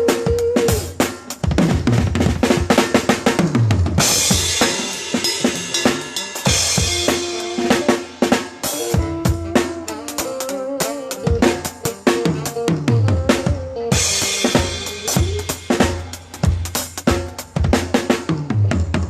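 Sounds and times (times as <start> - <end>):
bass drum and snare strokes: 0.0 - 19.0
live band playing: 0.0 - 19.0
cymbal crash: 4.0 - 9.0.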